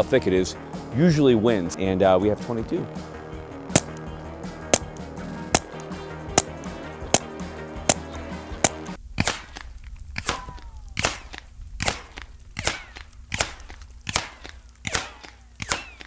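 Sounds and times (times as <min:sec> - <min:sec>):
bullets striking concrete: 0:03.8 - 0:04.0, 0:04.8 - 0:05.0, 0:05.6 - 0:06.6, 0:07.2 - 0:08.1, 0:08.7 - 0:16.0
ricochet whine: 0:03.8 - 0:04.0, 0:04.8 - 0:06.6, 0:07.9 - 0:08.1, 0:08.7 - 0:16.0.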